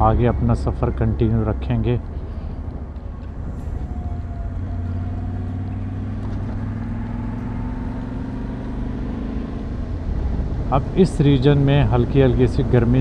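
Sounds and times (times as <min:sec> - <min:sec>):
motorcycle engine cruising: 0:00.0 - 0:13.0
wind noise on microphone: 0:09.7 - 0:13.0.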